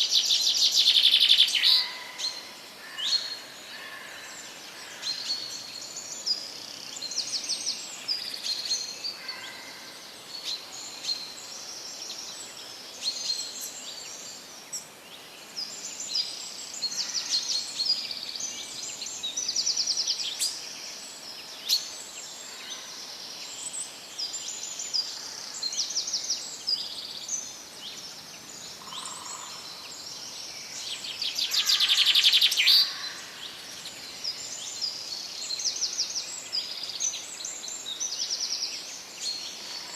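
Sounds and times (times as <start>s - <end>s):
birds chirping and singing: 21.4s - 39.9s.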